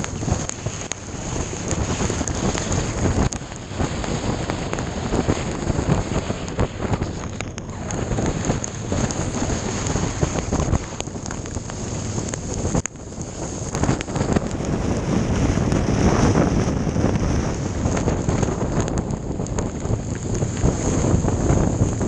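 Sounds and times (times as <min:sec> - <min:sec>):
wind buffeting microphone: 0:00.0 - 0:22.0
heavy rain and ice pellets: 0:06.7 - 0:15.8.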